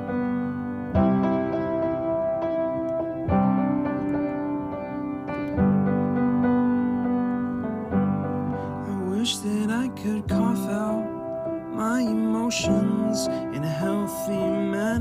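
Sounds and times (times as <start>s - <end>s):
electric piano chords: 0.0s - 15.0s
person singing: 8.8s - 15.0s.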